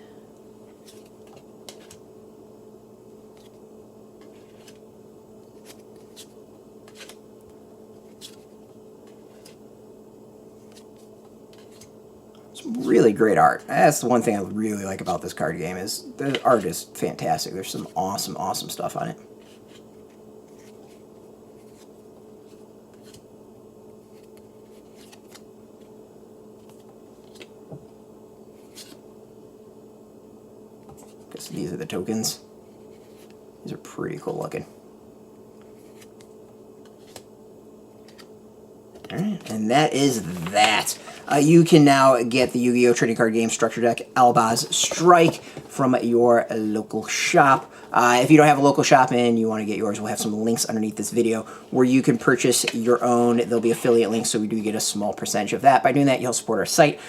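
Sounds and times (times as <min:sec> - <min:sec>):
steady low hum: 0:00.0 - 0:57.0
trading cards sliding and tapping: 0:05.4 - 0:07.2.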